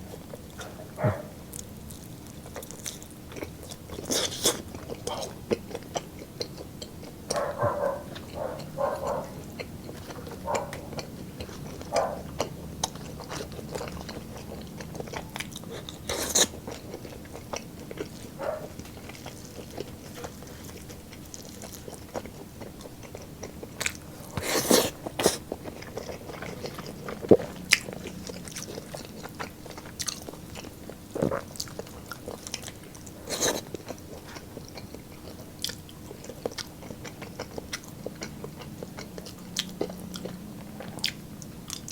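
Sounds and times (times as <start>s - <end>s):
chewing and biting: 0.0s - 41.9s
wet mouth sounds: 23.8s - 28.9s, 33.2s - 33.7s.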